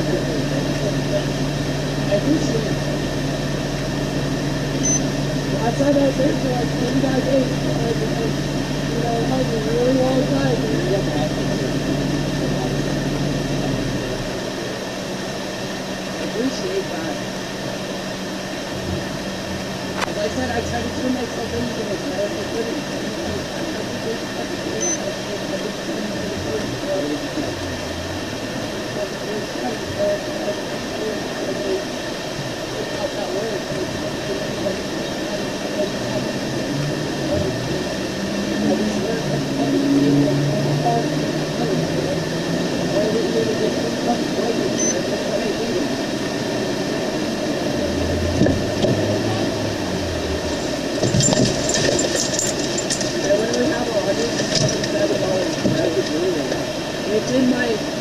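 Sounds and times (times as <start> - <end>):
deep low hum: 0.0 - 57.2
road and engine noise in cabin: 0.0 - 58.0
brief high beep: 4.8 - 5.1, 24.8 - 25.0.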